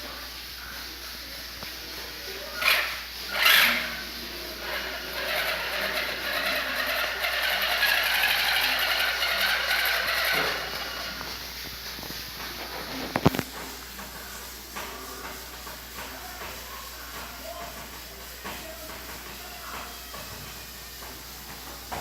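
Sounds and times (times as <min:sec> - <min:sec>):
model truck running: 0:02.6 - 0:03.9, 0:04.6 - 0:11.3.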